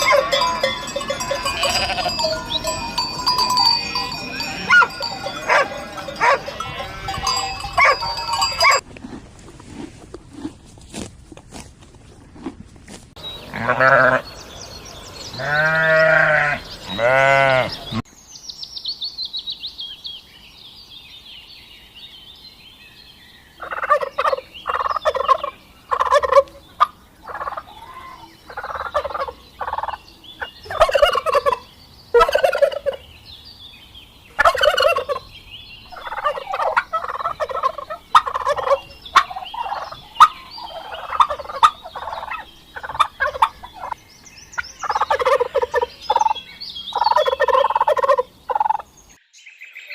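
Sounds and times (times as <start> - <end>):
bleating: 0.0 - 2.4, 4.3 - 8.0, 13.5 - 14.2, 15.3 - 18.0, 27.7 - 28.4
domestic fowl calling: 0.0 - 2.7, 3.8 - 8.8, 23.6 - 30.0, 30.6 - 31.6, 32.2 - 33.0, 34.4 - 35.2, 35.9 - 44.0, 44.9 - 48.9.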